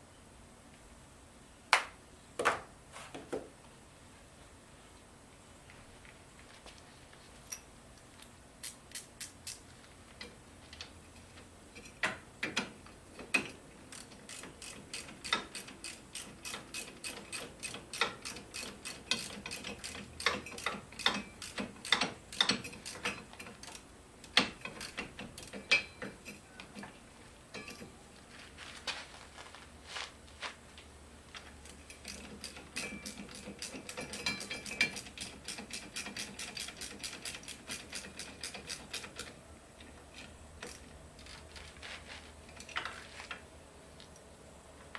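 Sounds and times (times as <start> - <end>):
ratchet wrench clicking: 8.6 - 9.6, 13.3 - 25.9, 31.8 - 39.3.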